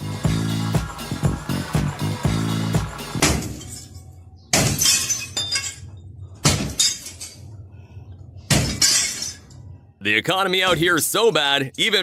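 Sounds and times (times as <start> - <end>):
glass smashing: 3.2 - 7.4, 8.5 - 9.5
breaking glass tinkling: 3.3 - 7.5, 8.6 - 9.5.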